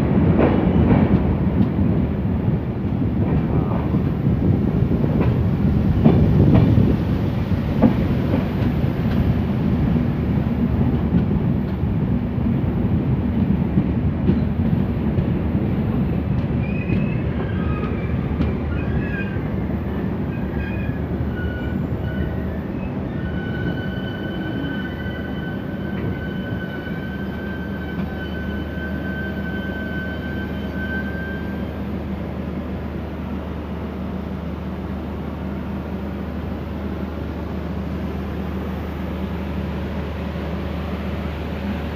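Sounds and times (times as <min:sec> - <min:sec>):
train rumbling on rails: 0:00.0 - 0:41.9
brake squeal: 0:20.4 - 0:31.7.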